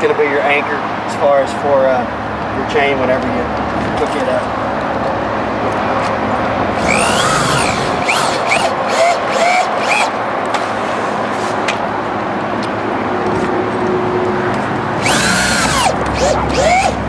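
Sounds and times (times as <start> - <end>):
power drill driving screws: 6.8 - 10.2, 15.0 - 17.0.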